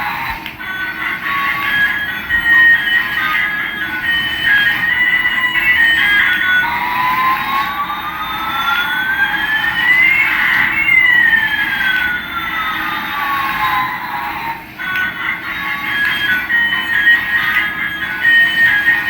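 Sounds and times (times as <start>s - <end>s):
stepped beeping melody: 0.0s - 19.0s.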